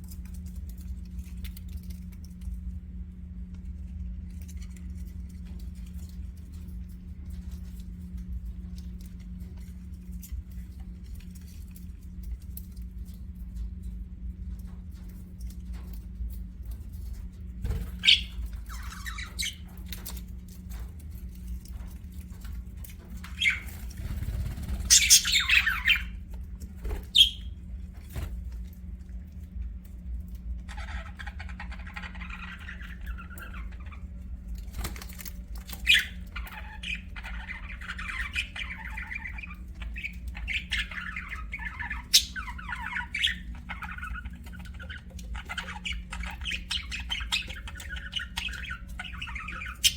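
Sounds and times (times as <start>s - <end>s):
low hum: 0.0s - 49.9s
budgerigars warbling chatter: 17.7s - 19.7s, 23.4s - 26.2s, 27.0s - 27.5s, 30.7s - 34.0s, 35.8s - 49.9s
budgerigars squawking: 17.9s - 19.6s, 24.7s - 26.1s, 27.1s - 27.5s, 35.8s - 49.9s.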